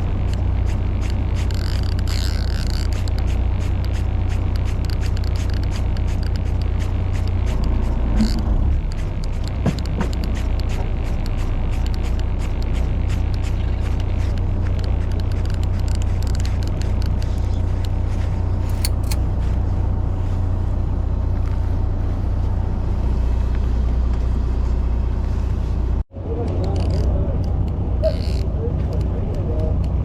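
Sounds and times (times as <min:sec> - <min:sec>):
sharp clicks: 0:18.6 - 0:19.4.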